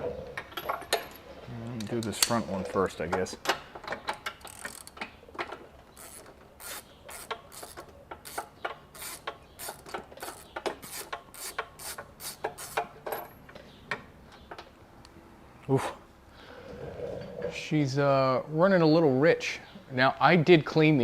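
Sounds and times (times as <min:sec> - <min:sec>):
ratchet wrench clicking: 0:04.2 - 0:05.0, 0:06.0 - 0:12.9.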